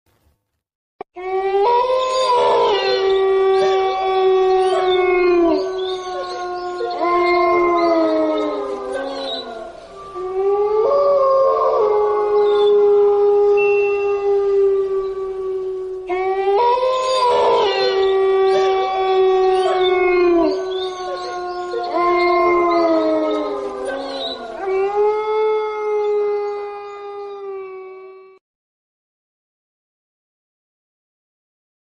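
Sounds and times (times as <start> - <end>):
dogs howling: 1.2 - 28.4.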